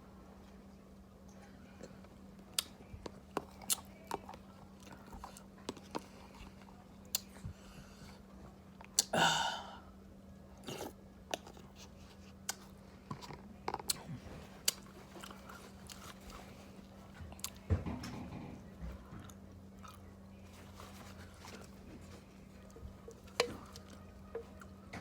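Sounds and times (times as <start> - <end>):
person chewing food: 2.5 - 6.4, 10.6 - 17.6, 19.2 - 24.8.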